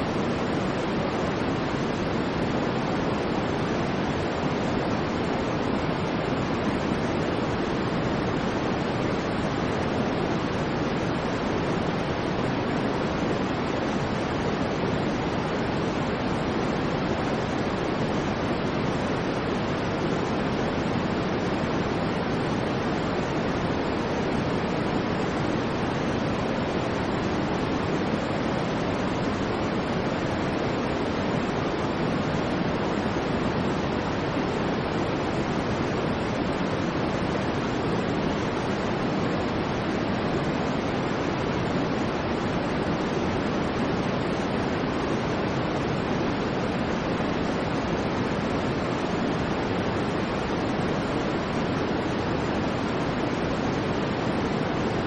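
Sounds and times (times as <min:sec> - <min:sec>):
electronic white noise hiss: 0:00.0 - 0:55.0.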